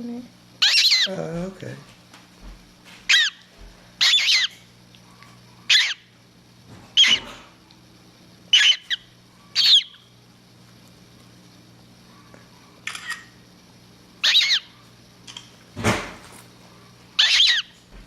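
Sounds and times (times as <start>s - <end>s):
gull chick peeping: 17.2s - 17.7s.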